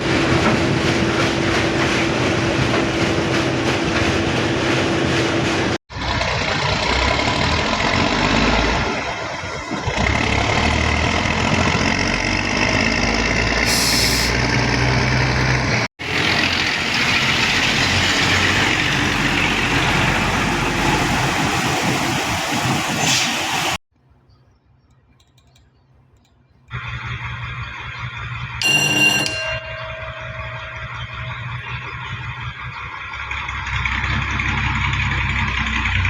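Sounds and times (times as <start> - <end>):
diesel truck engine running: 0.0 - 23.6, 26.7 - 28.6, 29.6 - 36.0
air hiss: 13.7 - 14.4.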